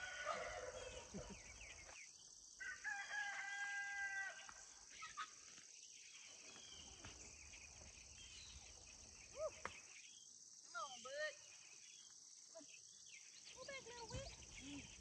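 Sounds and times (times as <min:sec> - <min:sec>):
rooster crowing: 0:00.0 - 0:01.1, 0:02.6 - 0:04.5
insects buzzing: 0:00.0 - 0:15.0.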